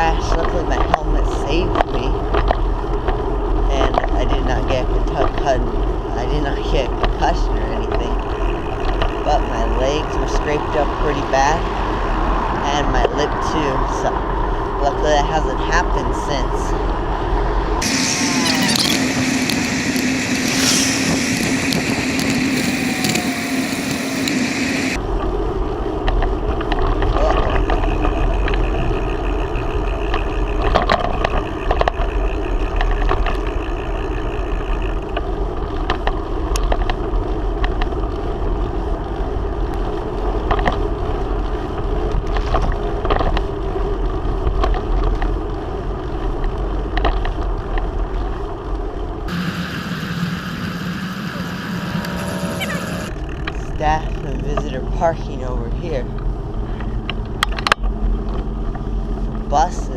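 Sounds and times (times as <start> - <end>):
wind rumble on microphone: 0.0 - 49.9
road noise: 0.0 - 59.9
bicycle clicks and rattles: 25.8 - 49.2.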